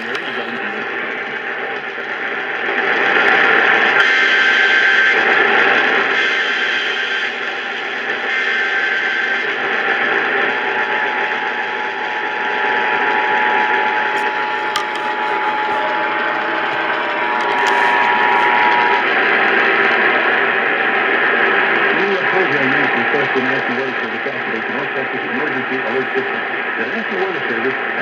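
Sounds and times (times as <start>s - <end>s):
loud radio static: 0.0s - 2.5s, 14.1s - 28.0s.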